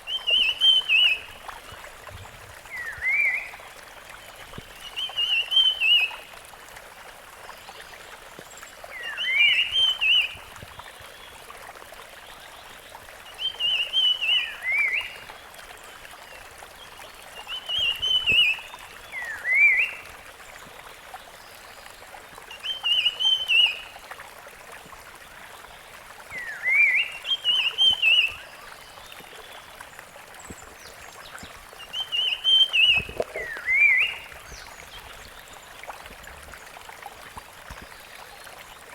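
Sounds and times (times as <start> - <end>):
bird whistling song: 2.7 - 3.5, 19.2 - 20.0, 26.4 - 28.5, 31.8 - 34.7.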